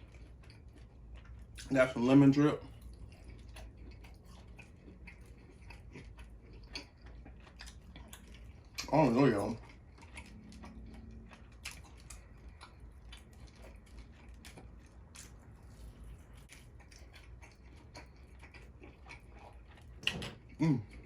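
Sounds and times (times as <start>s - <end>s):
mouth chewing meat: 0.0s - 21.0s.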